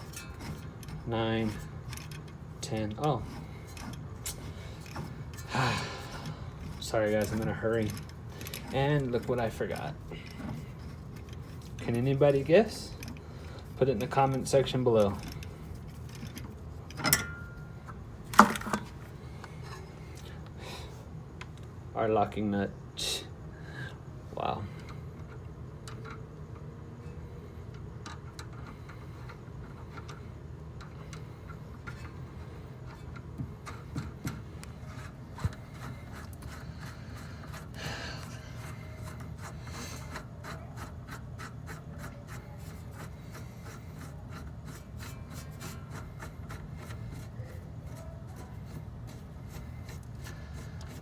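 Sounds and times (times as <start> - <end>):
metal scraping: 0.0 - 20.0, 31.2 - 51.0
steady low hum: 0.0 - 51.0
small metal clicks: 24.8 - 26.7.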